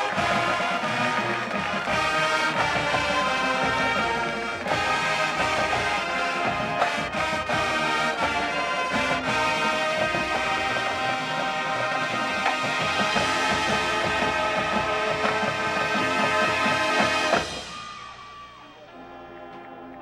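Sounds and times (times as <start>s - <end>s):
marching band playing: 0.0s - 20.0s.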